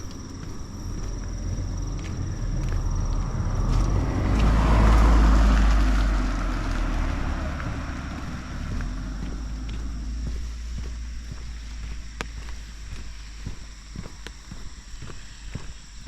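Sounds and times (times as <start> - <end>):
car driving past: 1.1 - 10.8.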